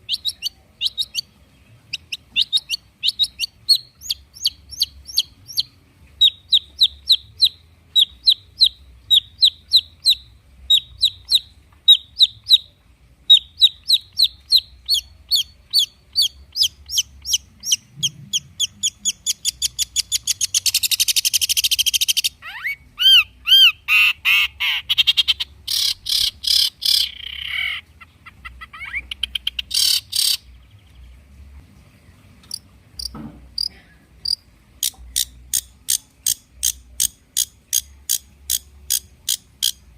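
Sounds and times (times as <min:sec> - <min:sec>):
shrike singing chirps and trills: 0:00.0 - 0:31.2.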